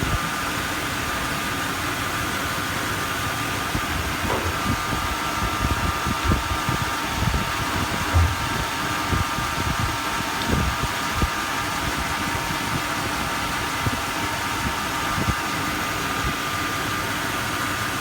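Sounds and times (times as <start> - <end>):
truck engine running: 0.3 - 18.0
low thumps: 3.8 - 9.9.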